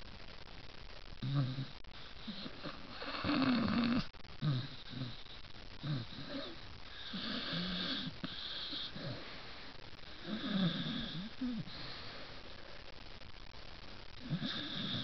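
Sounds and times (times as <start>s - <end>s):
dog snoring: 1.2s - 9.5s, 10.1s - 12.2s, 14.2s - 15.0s.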